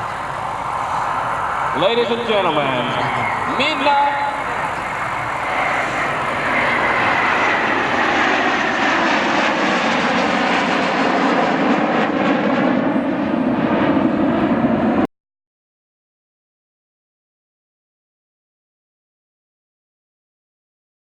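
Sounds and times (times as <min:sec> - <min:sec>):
jet engines roaring past: 0:00.0 - 0:15.1
jet whine falling in pitch: 0:00.0 - 0:15.1.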